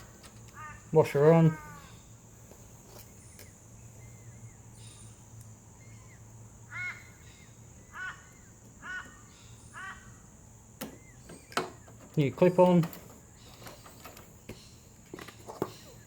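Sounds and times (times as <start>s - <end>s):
crow cawing: 0.5s - 2.0s, 6.7s - 7.3s, 7.9s - 10.2s.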